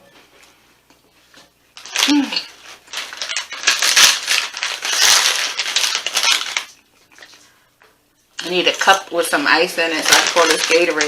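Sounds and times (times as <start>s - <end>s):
foil chip bag crinkling: 1.8s - 7.5s, 8.4s - 11.0s.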